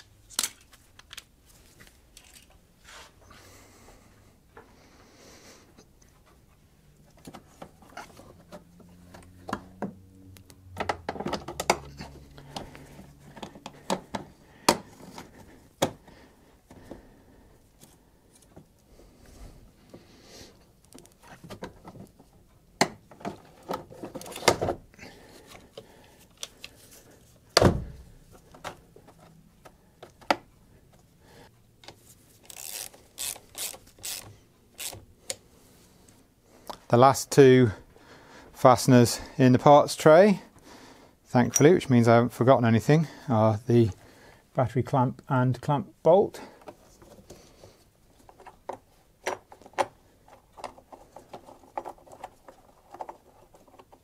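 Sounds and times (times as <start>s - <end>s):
car parts clicking and knocking: 7.1s - 16.0s, 20.8s - 25.0s, 48.2s - 54.0s.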